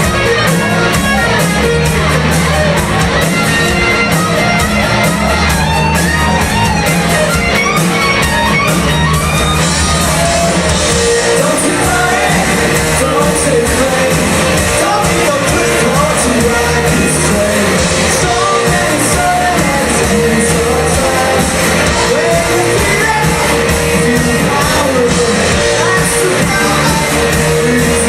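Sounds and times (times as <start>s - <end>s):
electric guitar: 0.0s - 28.0s
live rock band playing: 0.0s - 28.0s
person singing: 10.0s - 28.0s.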